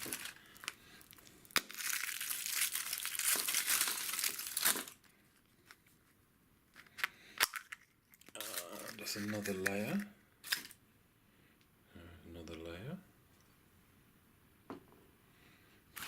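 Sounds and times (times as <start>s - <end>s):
wrapper crinkling and tearing: 0.0s - 5.8s, 6.8s - 10.8s.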